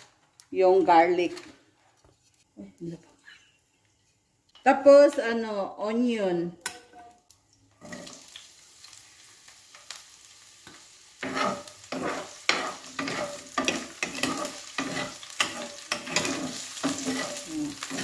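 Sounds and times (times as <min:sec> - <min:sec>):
garlic and onion sizzling in oil: 0:00.0 - 0:01.8, 0:04.7 - 0:18.0
spatula scraping pan: 0:11.2 - 0:18.0.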